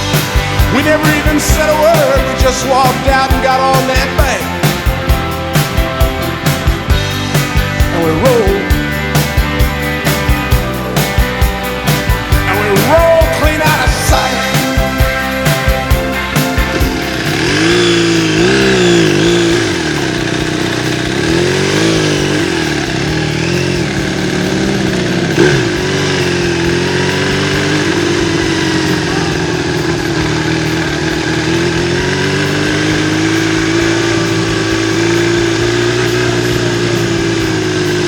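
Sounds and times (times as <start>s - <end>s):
motorcycle engine revving: 0.0s - 38.0s.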